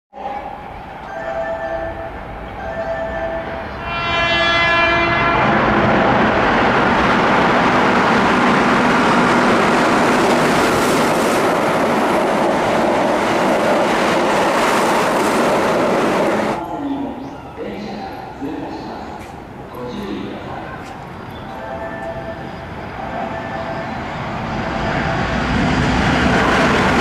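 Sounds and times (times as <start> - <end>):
train passing at speed: 0.2 - 27.0
train horn blast: 3.8 - 6.2.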